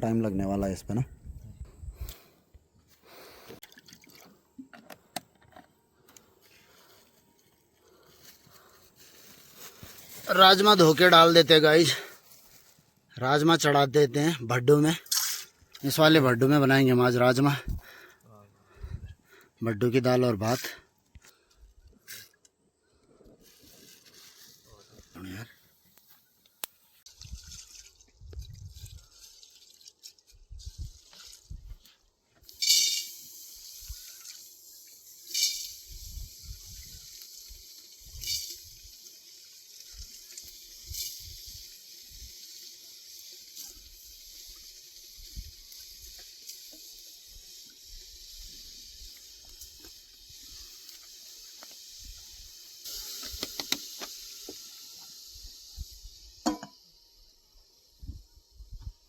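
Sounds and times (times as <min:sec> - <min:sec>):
fire crackling: 0:06.0 - 0:19.5, 0:32.4 - 0:56.2
steady hiss: 0:06.1 - 0:20.9, 0:32.4 - 0:59.0.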